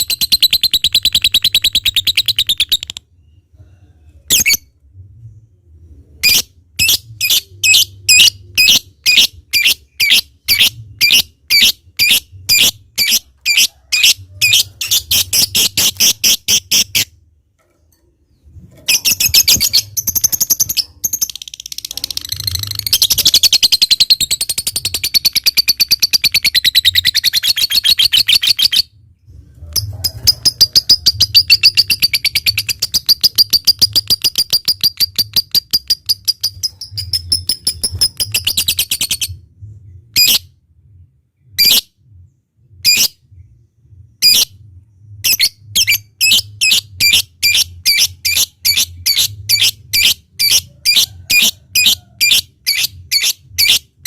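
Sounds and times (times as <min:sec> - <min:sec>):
lovebird chirping: 0:00.0 - 0:03.5, 0:06.2 - 0:17.1, 0:18.3 - 0:28.9, 0:29.8 - 0:39.4, 0:44.2 - 0:53.9.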